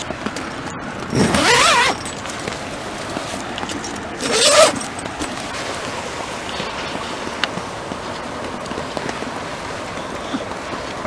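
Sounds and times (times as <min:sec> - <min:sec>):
tent zipper being pulled: 0:00.3 - 0:05.6.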